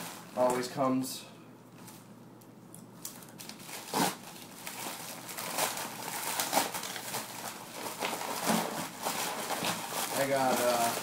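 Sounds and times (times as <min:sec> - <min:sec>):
plastic bag crinkling: 0:00.0 - 0:00.8, 0:03.0 - 0:11.0.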